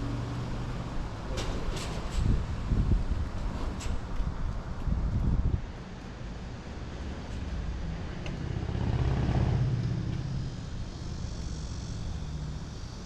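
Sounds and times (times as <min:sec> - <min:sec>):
vehicle passing by: 0:06.8 - 0:12.6.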